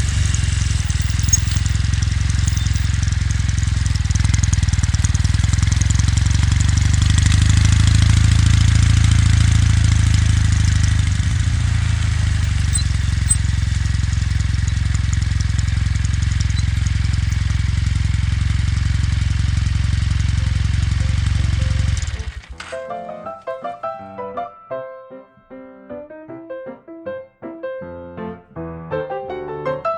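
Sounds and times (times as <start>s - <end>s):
motorcycle engine running: 0.0s - 22.7s.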